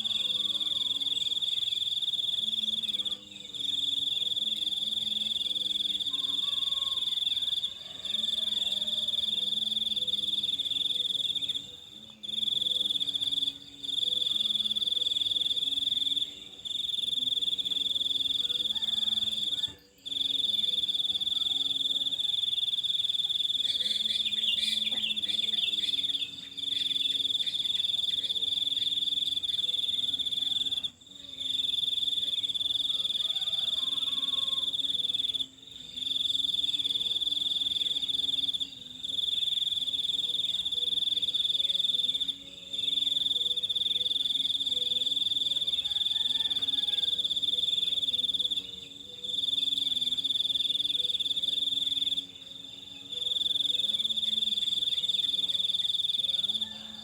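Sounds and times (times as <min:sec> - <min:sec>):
high insect trill: 0:00.0 - 0:57.0
bird chirps: 0:23.6 - 0:27.9.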